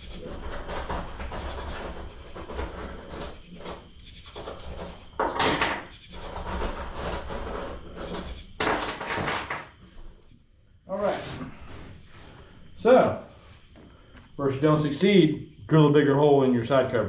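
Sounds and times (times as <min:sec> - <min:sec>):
tools and parts clattering: 0:05.2 - 0:06.0, 0:08.1 - 0:09.8.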